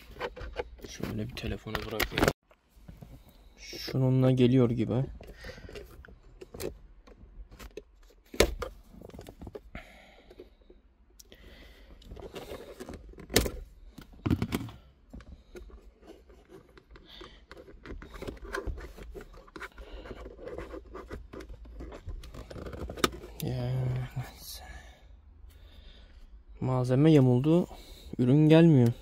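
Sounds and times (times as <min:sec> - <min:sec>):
plastic tool scraping and prying: 0:00.0 - 0:02.4, 0:12.0 - 0:23.4.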